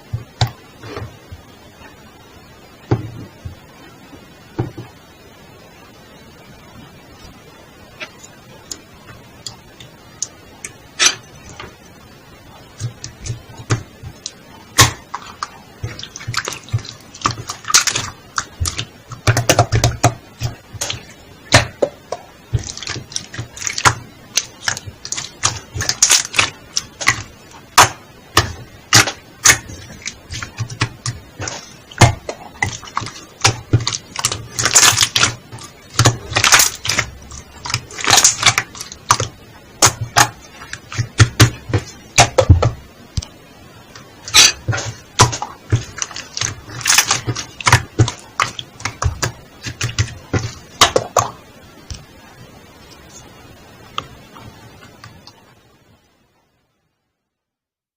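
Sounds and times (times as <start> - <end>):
slime squished by hand: 22.5 - 43.3, 44.2 - 52.0.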